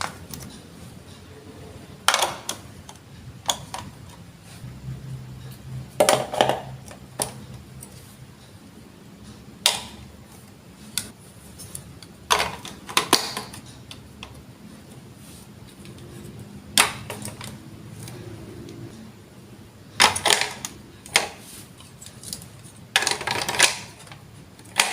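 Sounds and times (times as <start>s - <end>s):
plastic blocks clicking together: 2.0s - 4.2s, 11.9s - 14.4s, 20.0s - 24.9s.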